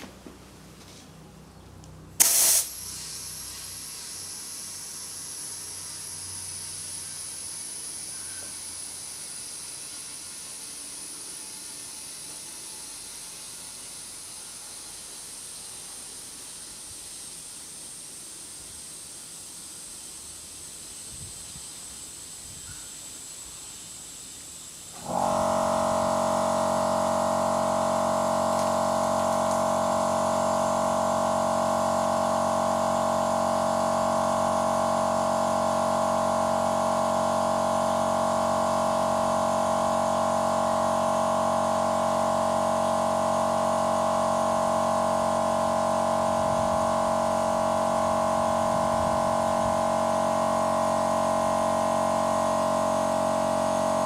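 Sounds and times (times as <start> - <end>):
air compressor humming: 0.0 - 54.0
compressed air hissing into tyre: 2.2 - 26.2.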